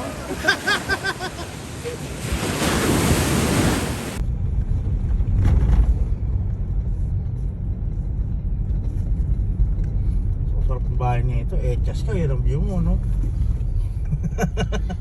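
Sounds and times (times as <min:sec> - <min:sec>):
steady low rumble: 0:04.1 - 0:15.0.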